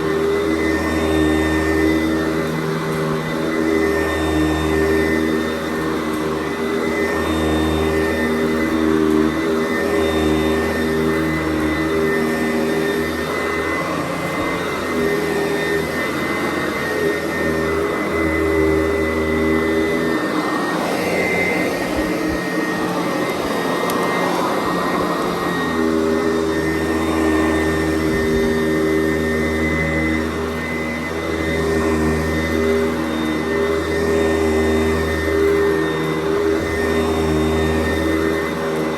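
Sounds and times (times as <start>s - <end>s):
upright vacuum cleaner running: 0.0s - 38.9s.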